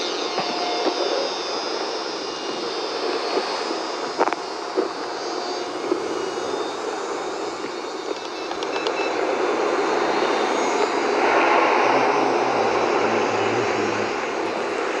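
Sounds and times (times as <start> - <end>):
model airplane propeller buzzing: 9.5 - 15.0.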